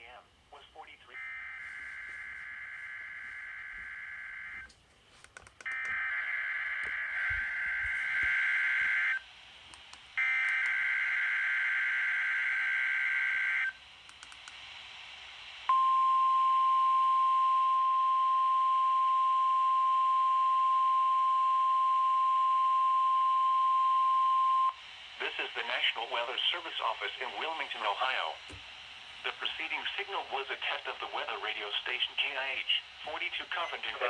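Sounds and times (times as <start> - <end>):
steady alarm tone: 1.2 - 4.7, 5.7 - 9.2.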